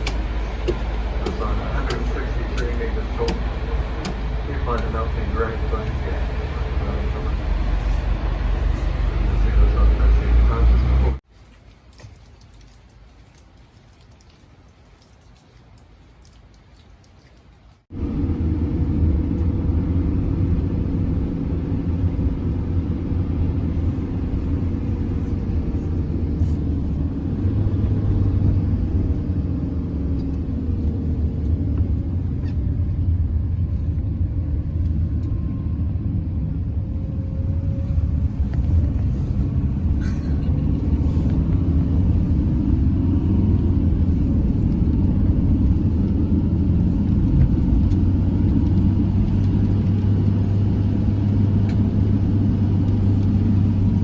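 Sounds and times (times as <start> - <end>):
vehicle engine and road rumble: 0.0 - 54.0.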